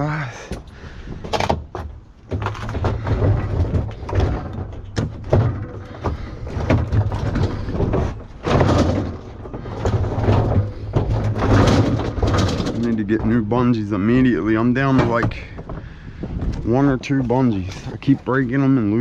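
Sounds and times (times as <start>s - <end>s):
knocks and clatter of objects: 0.3s - 19.0s.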